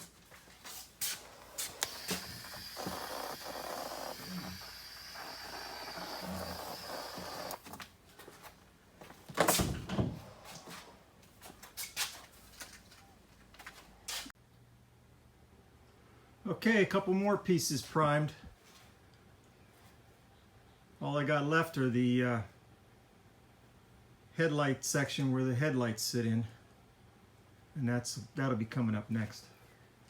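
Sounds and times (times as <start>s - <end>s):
spray gun hissing: 1.0s - 7.6s.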